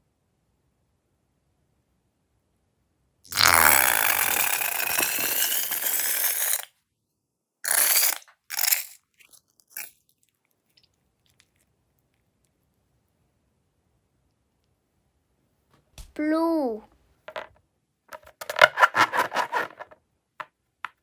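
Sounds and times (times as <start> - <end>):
crunchy slime squeezed crackling: 3.3 - 3.9.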